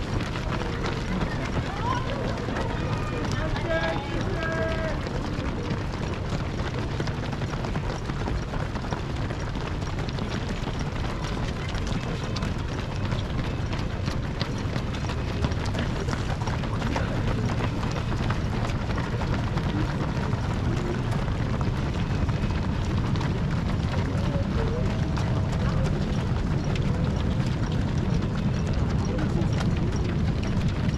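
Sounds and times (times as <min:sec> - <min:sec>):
running footsteps on pavement: 0:00.0 - 0:30.9.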